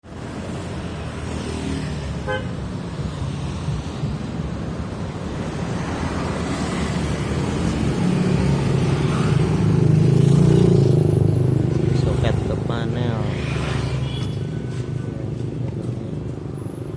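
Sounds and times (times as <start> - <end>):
road traffic noise: 0.0 - 16.9.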